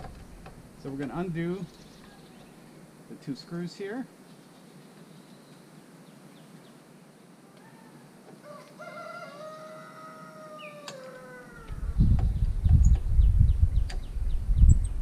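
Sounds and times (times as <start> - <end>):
rooster crowing: 7.5 - 12.0.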